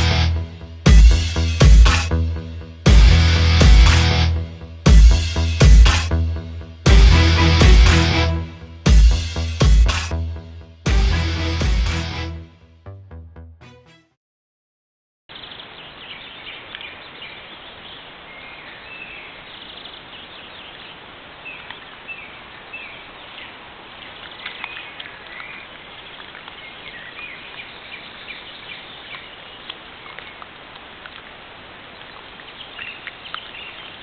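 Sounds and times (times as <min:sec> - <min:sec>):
microphone hiss: 0:15.3 - 0:34.0.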